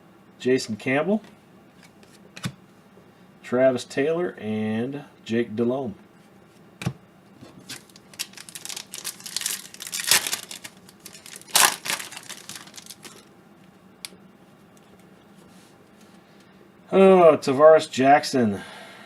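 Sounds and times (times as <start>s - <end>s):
foil wrapper tearing and crinkling: 7.6s - 13.3s.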